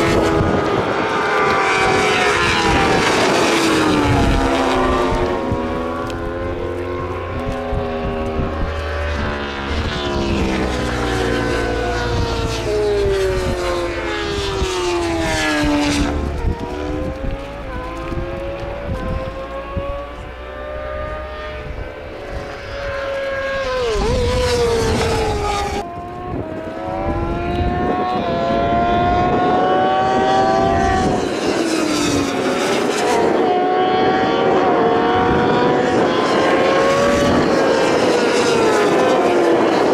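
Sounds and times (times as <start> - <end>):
racing motorcycle engines revving: 0.0 - 39.9.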